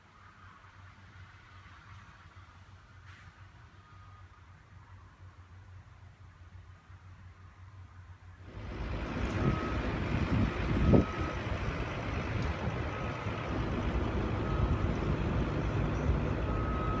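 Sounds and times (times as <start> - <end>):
vehicle rumble: 0.0 - 17.0
wind noise: 8.4 - 17.0.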